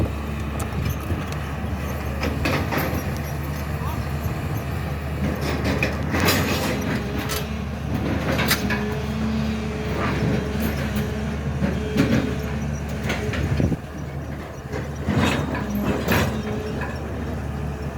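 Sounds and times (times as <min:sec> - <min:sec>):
excavator diesel engine: 0:00.0 - 0:17.9
digging knocks and scrapes: 0:05.1 - 0:17.1.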